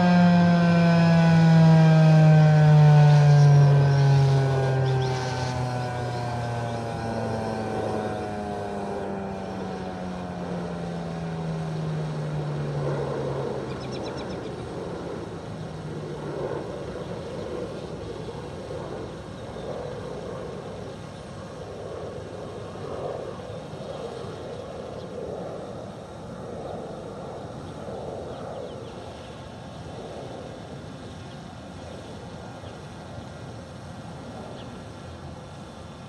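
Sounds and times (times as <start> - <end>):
warning siren winding down: 0.0 - 15.2.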